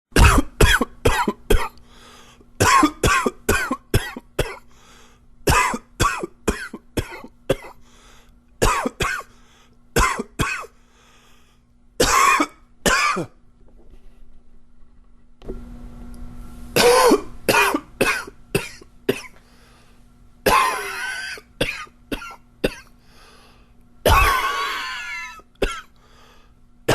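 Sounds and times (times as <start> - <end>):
man coughing: 0.2 - 1.8, 2.6 - 4.7, 5.5 - 7.8, 8.6 - 9.3, 10.0 - 10.7, 12.0 - 13.4, 16.8 - 19.4, 20.4 - 22.9, 24.0 - 25.9.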